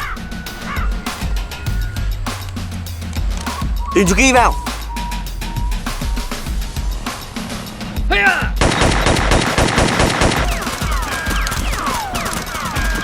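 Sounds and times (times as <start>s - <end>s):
short falling whistles: 0.0s - 6.9s
background music with low beat: 0.0s - 9.7s
machine-gun fire: 8.6s - 13.0s.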